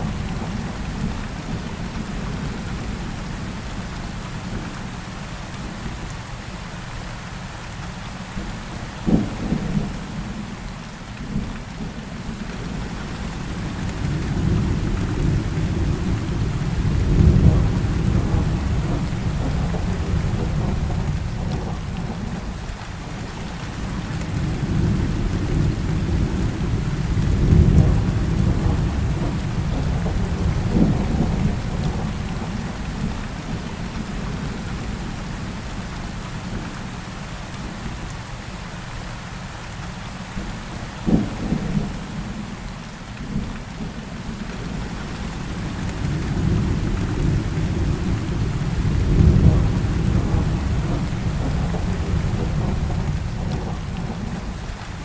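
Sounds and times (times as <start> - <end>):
heavy rain: 0.0 - 55.0
deep rolling thunder: 13.5 - 22.6, 23.8 - 34.9, 44.6 - 54.8.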